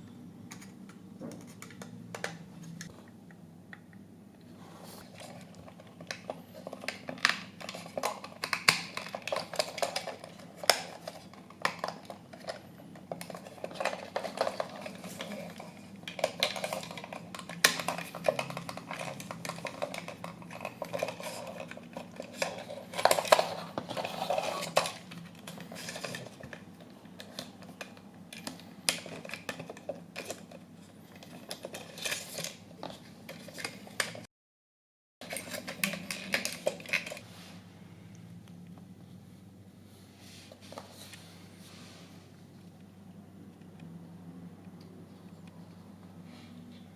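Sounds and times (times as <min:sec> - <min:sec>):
small tools clicking and scraping: 0:05.0 - 0:34.3, 0:35.2 - 0:37.2.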